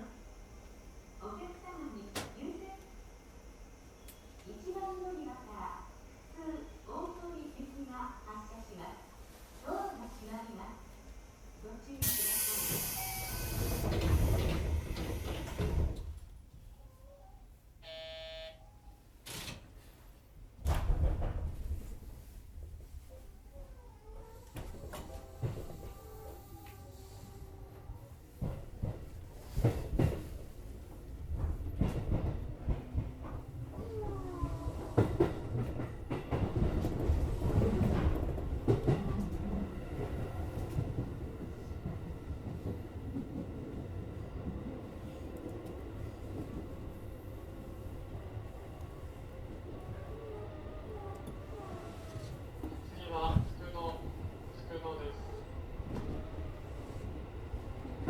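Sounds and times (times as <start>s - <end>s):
short buzzer: 12.0s - 13.6s, 17.8s - 18.6s
brief air hiss: 12.0s - 14.3s
train doors closing with thud: 12.0s - 16.4s, 20.6s - 22.2s, 24.5s - 26.7s, 27.8s - 54.6s, 55.2s - 58.0s.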